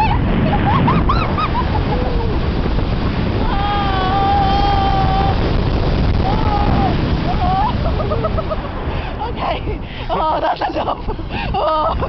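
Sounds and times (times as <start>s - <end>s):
wind rushing on microphone: 0.0s - 12.0s
woman screaming: 3.4s - 5.5s, 6.2s - 7.9s.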